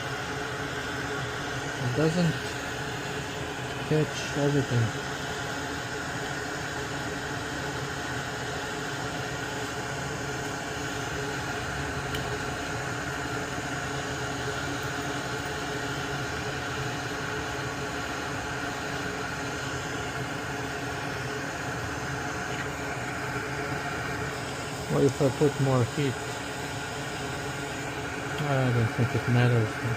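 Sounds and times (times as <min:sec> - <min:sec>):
hot-air station blowing: 0:00.0 - 0:29.9.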